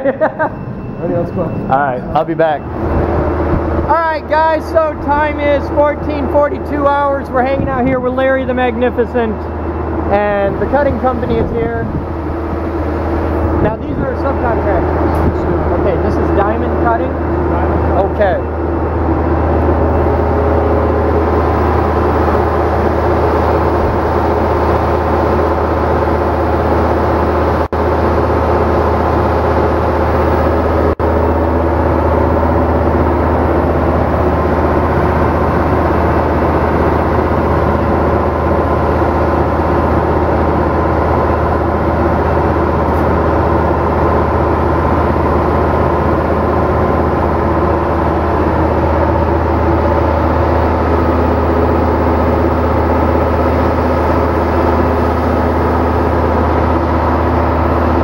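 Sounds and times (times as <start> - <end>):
concrete cutter engine running: 1.1 - 58.0.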